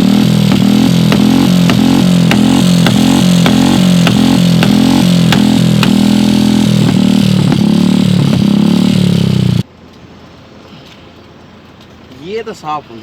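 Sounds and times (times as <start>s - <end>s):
single-cylinder motorcycle engine: 0.0s - 9.7s.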